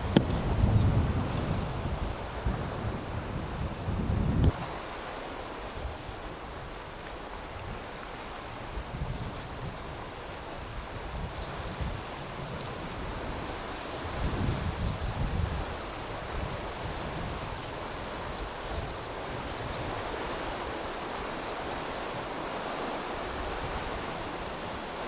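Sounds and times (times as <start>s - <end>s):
wind buffeting microphone: 0.0s - 4.9s, 8.5s - 22.3s
heavy waves washing: 0.0s - 8.9s, 11.7s - 25.0s
click: 0.1s - 0.4s.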